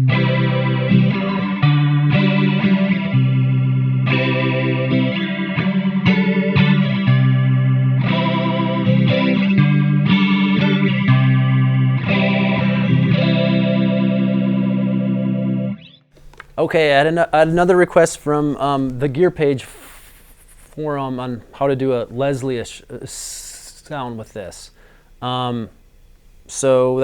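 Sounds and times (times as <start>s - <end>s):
electric guitar chords with swirling warble: 0.0s - 16.1s.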